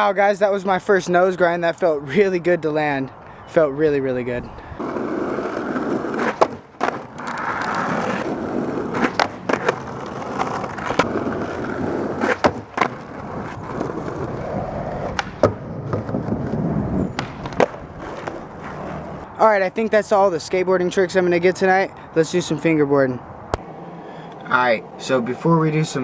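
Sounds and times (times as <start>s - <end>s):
skateboard wheels rolling: 4.7s - 19.3s
skateboard clacks and impacts: 5.4s - 14.2s, 15.0s - 19.2s.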